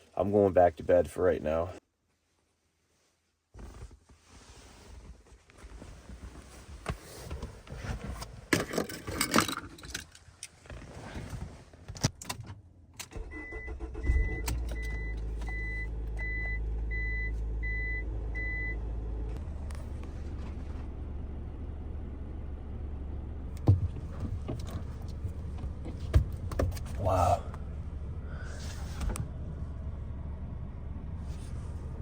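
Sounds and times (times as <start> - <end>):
van engine running: 12.6 - 32.0
dashboard warning chime beeping: 13.2 - 18.8.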